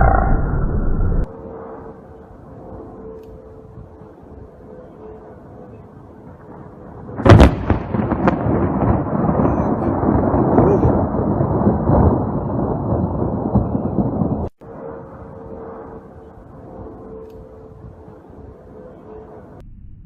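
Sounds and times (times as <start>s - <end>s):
thunderclap: 6.2s - 18.0s
rolling thunder: 6.2s - 18.7s.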